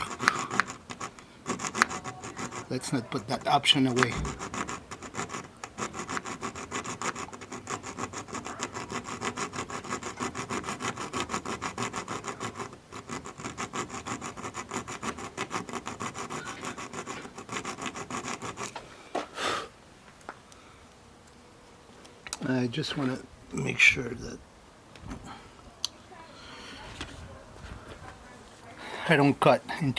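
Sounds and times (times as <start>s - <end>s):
hand saw cutting metal: 0.0s - 18.8s.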